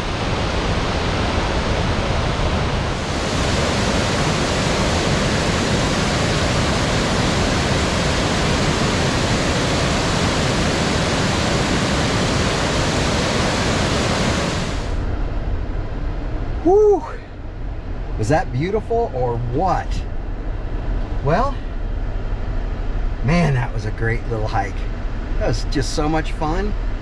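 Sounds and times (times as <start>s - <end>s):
waterfall roaring: 0.0s - 15.1s, 21.2s - 21.5s.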